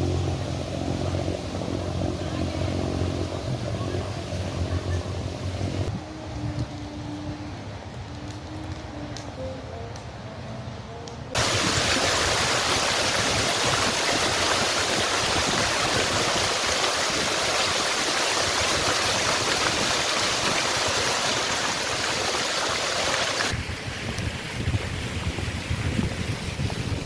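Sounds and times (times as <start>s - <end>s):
wind rumble on microphone: 0.0s - 9.2s, 11.3s - 27.0s
running water: 11.4s - 23.6s.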